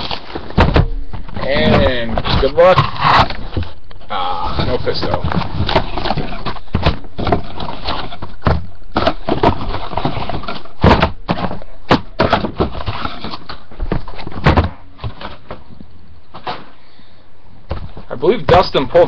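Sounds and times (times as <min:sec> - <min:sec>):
plastic and cardboard crackling: 0:00.0 - 0:16.8.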